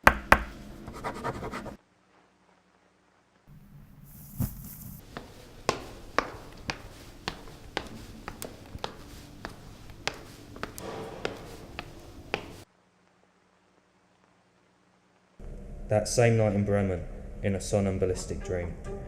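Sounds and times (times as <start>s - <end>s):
brief hiss: 3.9s - 5.0s.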